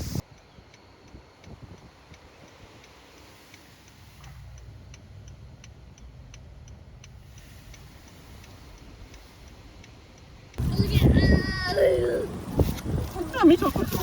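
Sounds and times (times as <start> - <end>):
mechanical ticking: 0.2 - 10.8.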